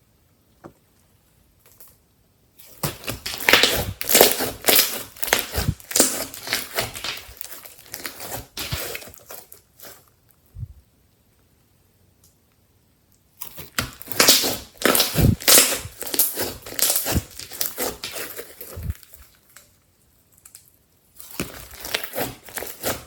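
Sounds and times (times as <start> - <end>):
slime crackling and crunching: 2.6 - 10.1, 13.4 - 19.8, 21.2 - 23.0.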